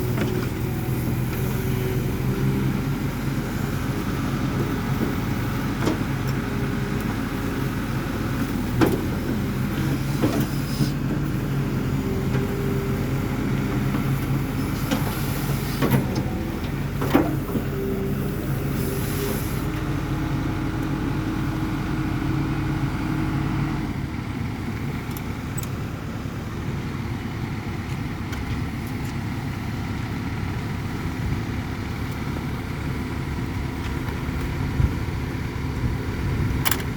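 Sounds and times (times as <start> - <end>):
excavator diesel engine running: 0.0 - 36.9.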